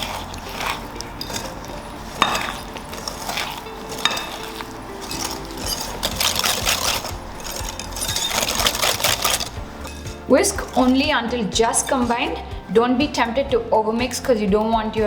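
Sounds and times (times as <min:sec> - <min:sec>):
whisk scraping in mixing bowl: 0:00.0 - 0:11.1.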